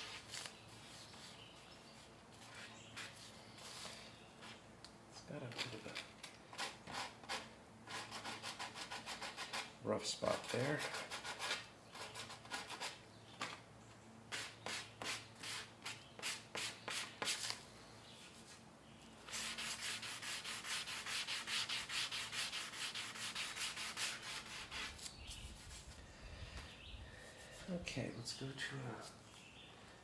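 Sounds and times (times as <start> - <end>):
hand sanding with sandpaper: 6.6 - 13.0, 14.3 - 17.6, 19.2 - 26.0.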